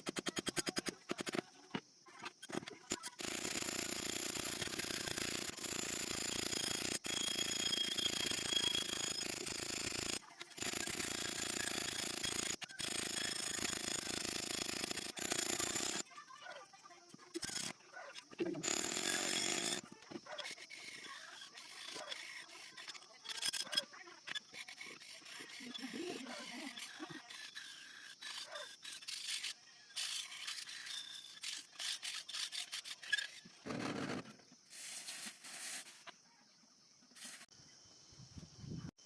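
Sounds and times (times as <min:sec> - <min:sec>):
metal scraping on sickle blade: 0:18.6 - 0:33.6.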